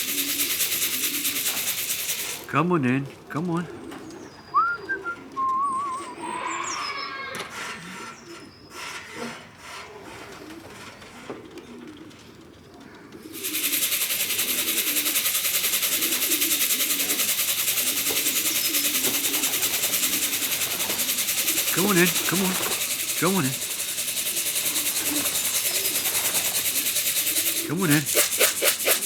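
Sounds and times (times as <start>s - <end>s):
pulsing high-pitched hiss: 0.0s - 2.5s, 13.4s - 29.0s
small birds chirping: 0.0s - 8.8s, 11.6s - 29.0s
pigeons cooing: 0.0s - 29.0s.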